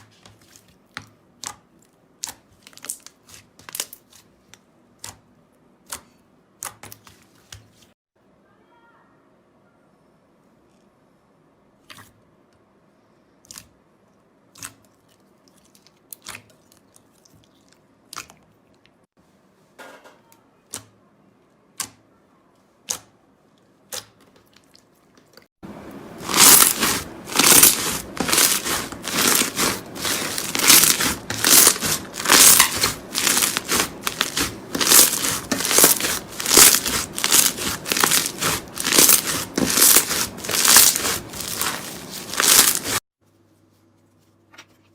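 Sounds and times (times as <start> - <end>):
slime crackling and crunching: 26.2 - 43.0.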